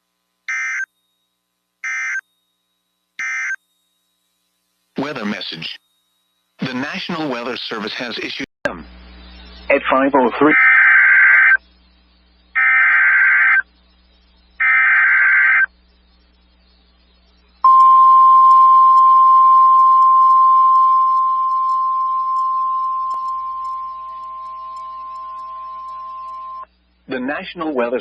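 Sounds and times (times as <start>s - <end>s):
single-pitch warning alarm tone: 0.5s - 4.5s, 12.6s - 13.6s, 17.6s - 26.7s
buzzy digital data bursts: 1.8s - 28.0s.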